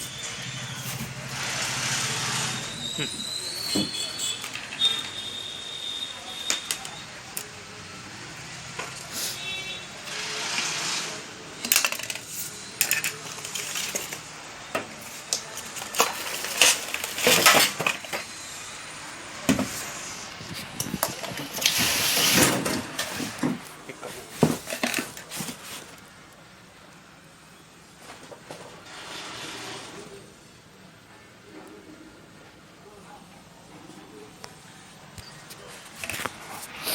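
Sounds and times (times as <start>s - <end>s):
packaging rustling: 15.0s - 18.3s, 19.8s - 26.1s.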